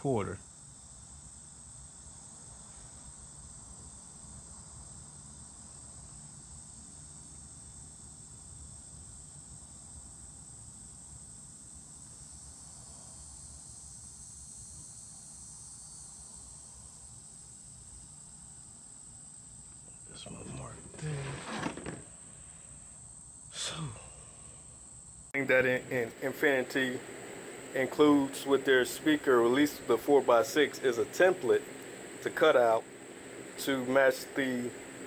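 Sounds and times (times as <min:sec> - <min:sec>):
crickets chirping: 0:25.4 - 0:35.0
low steady hum: 0:25.4 - 0:35.0.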